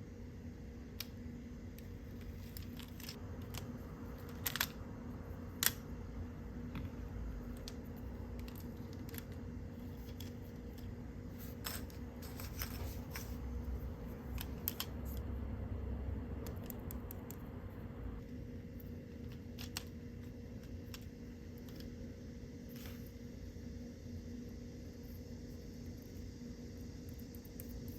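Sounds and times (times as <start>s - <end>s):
low electrical hum: 0.0s - 27.9s.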